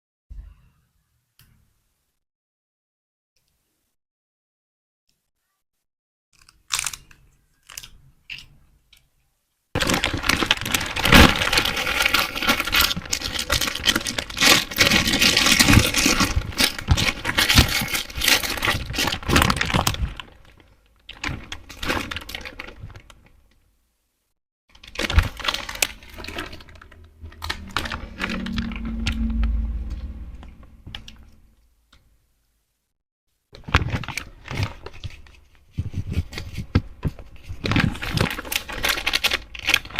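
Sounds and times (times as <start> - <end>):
plastic wrappers crinkling and tearing: 6.4 - 8.5, 9.8 - 23.6, 24.7 - 29.3, 33.6 - 39.9.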